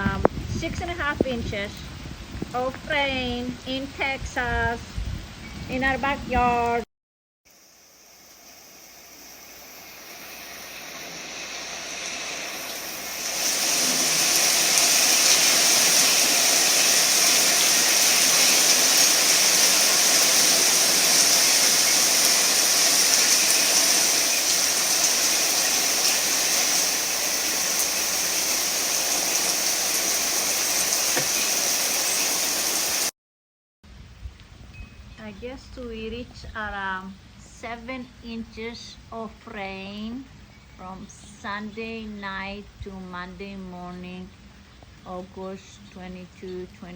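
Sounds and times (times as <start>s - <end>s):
heavy rain falling: 8.3s - 33.1s.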